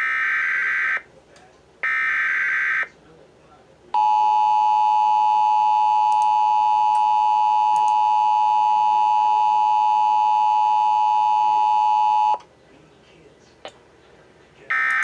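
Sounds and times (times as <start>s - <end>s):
loud steady electronic tone: 4.0s - 12.4s, 14.7s - 15.0s.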